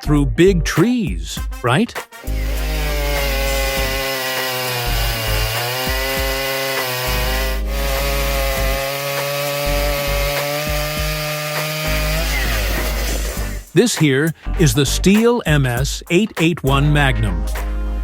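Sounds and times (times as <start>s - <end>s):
chainsaw cutting tree trunk: 2.3s - 13.6s.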